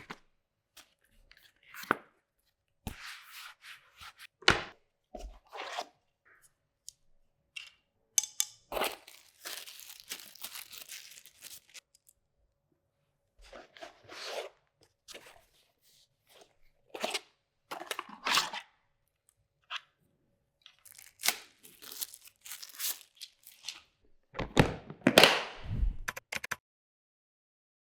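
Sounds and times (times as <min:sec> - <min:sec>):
packaging rustling and tearing: 0:08.7 - 0:12.0, 0:20.8 - 0:23.9.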